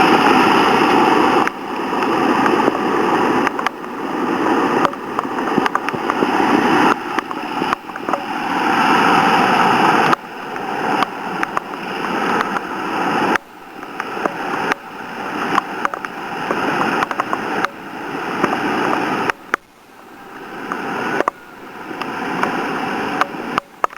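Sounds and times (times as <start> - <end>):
floodwater roaring: 0.0 - 23.9
small clicks: 3.4 - 4.0, 4.8 - 6.3, 10.0 - 12.7, 15.4 - 17.8, 18.4 - 19.8, 22.0 - 23.9.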